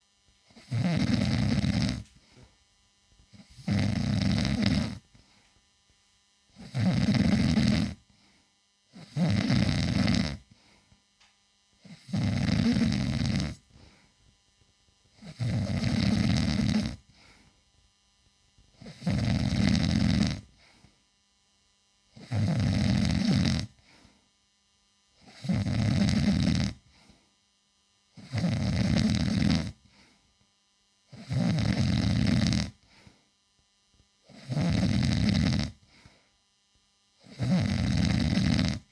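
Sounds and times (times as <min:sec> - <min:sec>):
man snoring loudly: 0:00.5 - 0:02.1, 0:03.4 - 0:05.0, 0:06.6 - 0:08.0, 0:08.9 - 0:10.4, 0:11.8 - 0:13.6, 0:15.2 - 0:17.0, 0:18.8 - 0:20.6, 0:22.2 - 0:23.8, 0:25.2 - 0:26.8, 0:28.2 - 0:29.8, 0:31.1 - 0:32.8, 0:34.3 - 0:35.8, 0:37.2 - 0:38.9.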